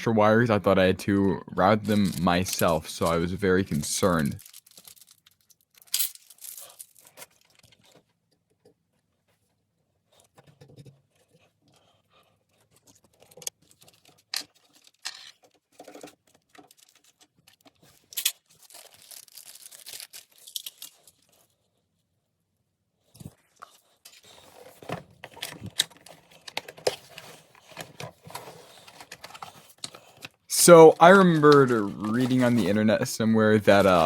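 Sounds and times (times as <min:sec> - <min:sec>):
packaging rustling: 0:01.8 - 0:08.0, 0:12.6 - 0:21.5, 0:24.1 - 0:34.0
clicks and light rattles: 0:24.0 - 0:30.4.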